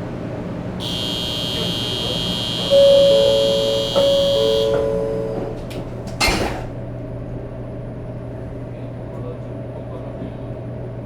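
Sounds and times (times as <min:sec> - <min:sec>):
low train hum: 0:00.0 - 0:11.0
high-pitched departure buzzer: 0:00.8 - 0:05.6
train doors hissing shut: 0:00.8 - 0:06.8
two-tone chime: 0:02.7 - 0:05.5.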